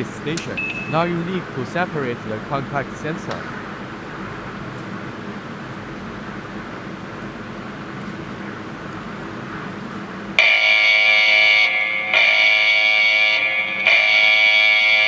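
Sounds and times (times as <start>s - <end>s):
electronic alarm tone: 0.0s - 1.4s.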